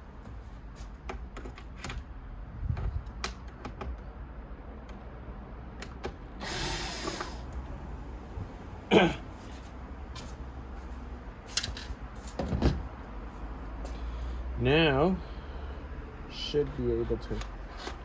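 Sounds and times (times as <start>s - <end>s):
short scraping hiss: 6.4s - 7.5s.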